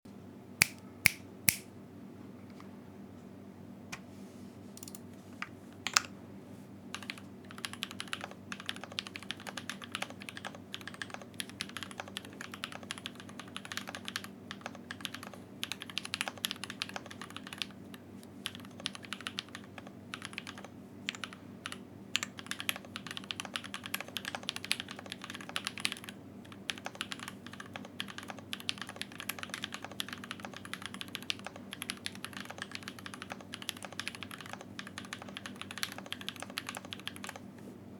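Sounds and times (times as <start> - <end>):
mechanical keyboard typing: 6.9 - 17.8, 18.4 - 37.5.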